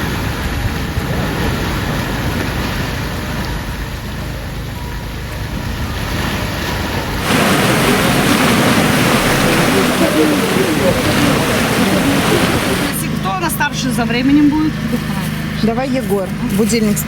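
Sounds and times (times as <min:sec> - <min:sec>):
hot water rushing in stream: 0:05.8 - 0:13.5.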